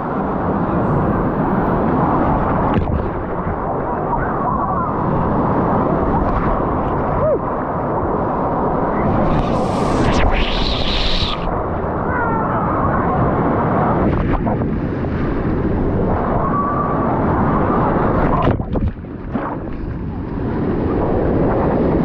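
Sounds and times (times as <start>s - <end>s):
waves rushing and breaking: 0.0s - 22.0s
wind buffeting microphone: 0.0s - 22.0s
faint voices of swimmers: 3.7s - 5.5s.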